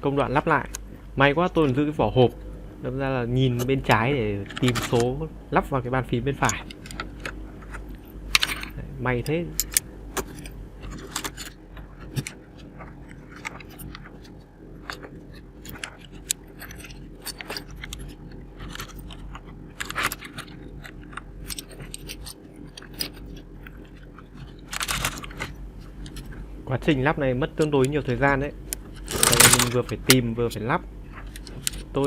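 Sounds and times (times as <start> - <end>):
plastic keycaps clicking and clattering: 4.5 - 5.0, 9.6 - 26.4, 28.8 - 30.1.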